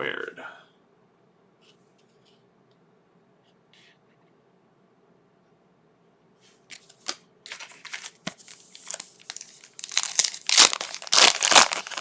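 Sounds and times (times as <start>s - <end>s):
wrapper tearing and crinkling: 7.0s - 12.0s.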